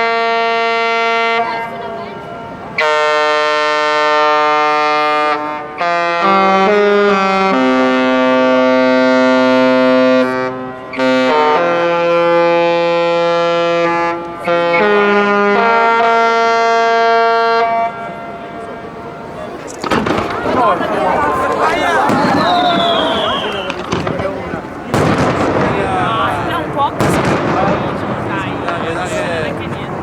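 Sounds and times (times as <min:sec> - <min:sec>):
ship horns playing chords: 0:00.0 - 0:19.4.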